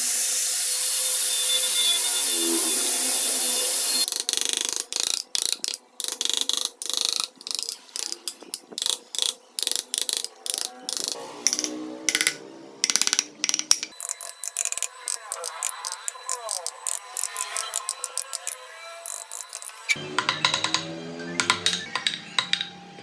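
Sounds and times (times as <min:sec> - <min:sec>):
short clicking strokes on wood: 0:04.1 - 0:22.8
wood-carving tool running: 0:09.6 - 0:23.0.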